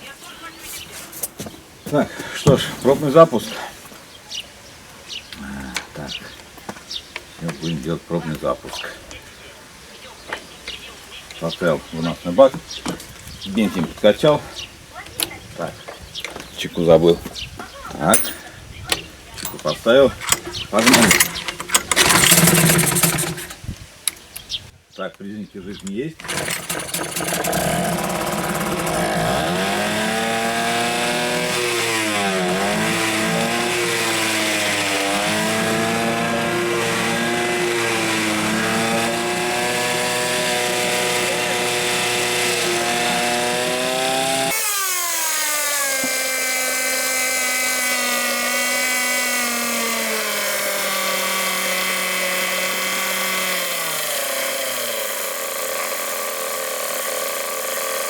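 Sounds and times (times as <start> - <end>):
outboard motor running unevenly: 26.2 - 44.6.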